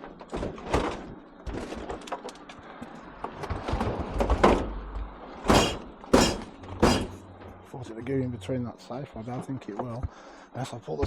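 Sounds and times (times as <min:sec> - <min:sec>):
dishwasher banging and clattering: 0:05.5 - 0:07.2.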